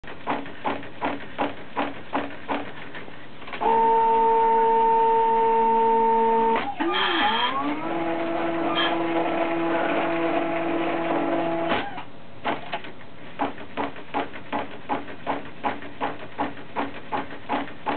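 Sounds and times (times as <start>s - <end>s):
printer motor pulses: 0.1s - 12.0s
printer motor whine: 3.5s - 12.1s.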